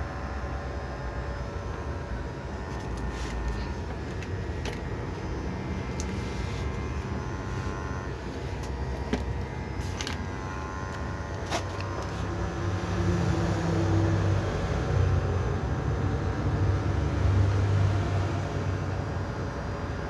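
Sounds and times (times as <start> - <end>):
faint steady tones: 0.0 - 12.7
low mechanical rumble: 0.0 - 20.0.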